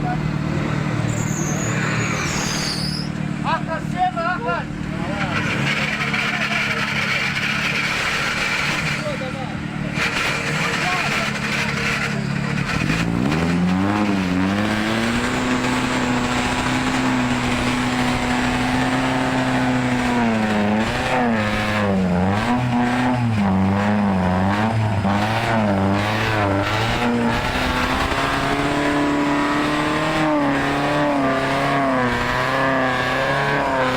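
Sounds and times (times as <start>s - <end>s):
car engine revving hard: 5.0s - 33.9s.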